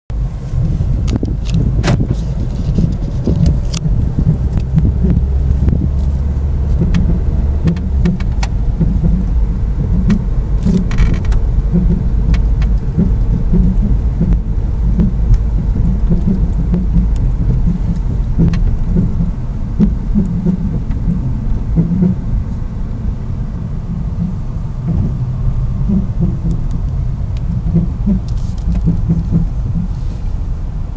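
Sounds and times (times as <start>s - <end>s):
car road rumble: 0.1s - 30.9s
pulsing rubbing noise: 0.4s - 30.6s
sharp clicks: 1.1s - 22.2s.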